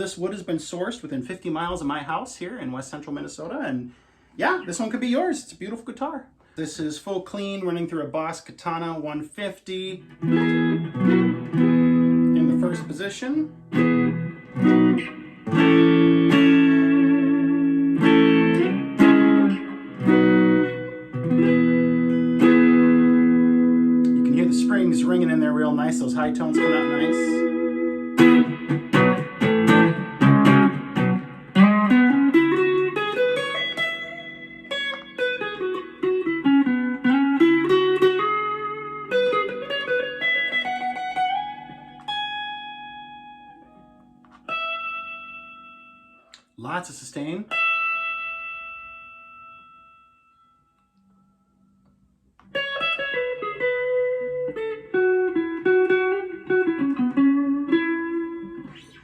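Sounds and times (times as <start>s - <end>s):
clean electric guitar: 9.9s - 46.6s, 47.4s - 59.0s
guitar slide into a note: 24.0s - 31.3s.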